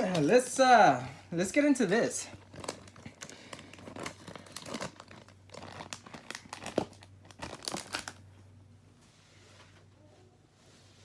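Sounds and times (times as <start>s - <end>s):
plastic wrapper tearing and crinkling: 2.3s - 8.3s.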